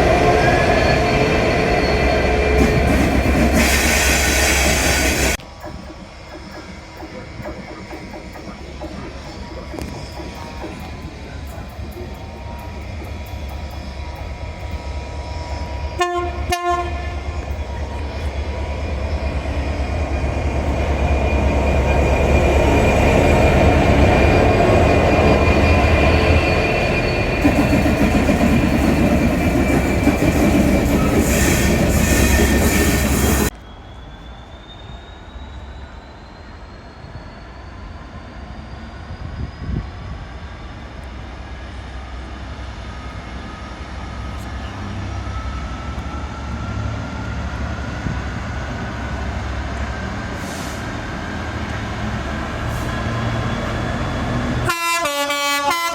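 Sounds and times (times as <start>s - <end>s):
train wheels rumbling: 0.0s - 55.9s
train horn blasts: 16.0s - 17.4s, 54.6s - 55.9s.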